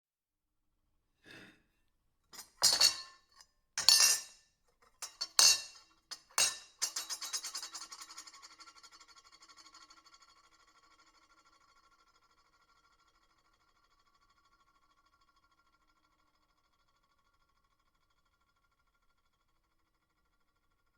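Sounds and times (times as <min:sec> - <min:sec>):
silverware clinking on plate: 0:02.4 - 0:03.2, 0:03.8 - 0:04.3, 0:05.0 - 0:08.4
plate ringing: 0:03.8 - 0:04.2.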